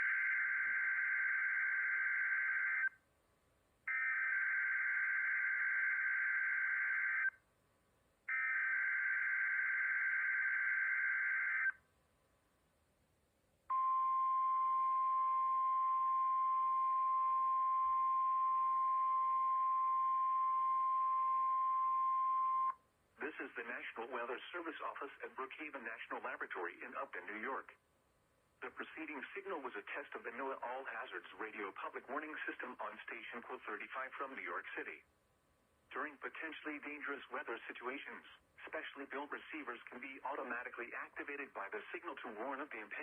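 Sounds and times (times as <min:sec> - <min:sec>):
steady warning alarm tone: 0:00.0 - 0:02.9, 0:03.9 - 0:07.3, 0:08.3 - 0:11.8.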